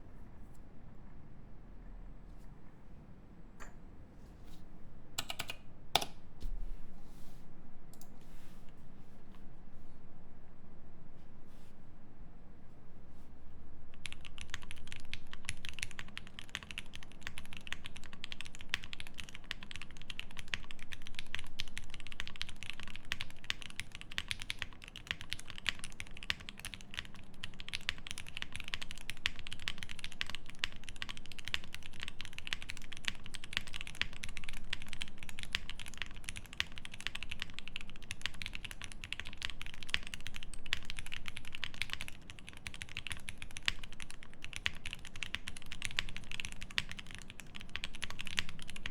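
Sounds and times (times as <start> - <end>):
fast typing on mechanical keyboard: 5.2 - 6.1, 14.0 - 48.9.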